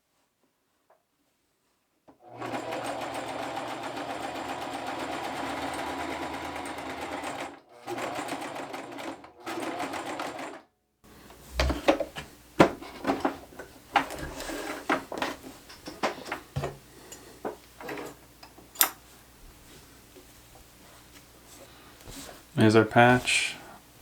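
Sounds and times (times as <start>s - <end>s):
sewing machine running: 2.2s - 10.6s.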